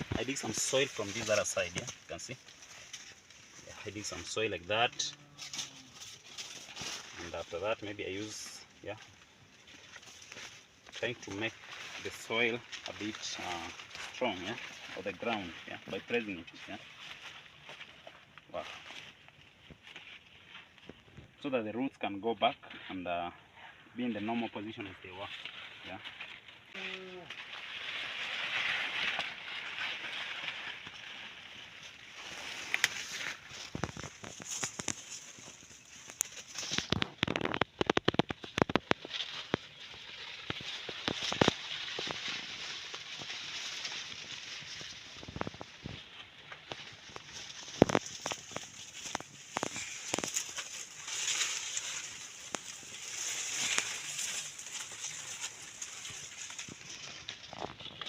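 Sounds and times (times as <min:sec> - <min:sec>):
maize leaves rustling and crackling: 0:00.0 - 0:58.0.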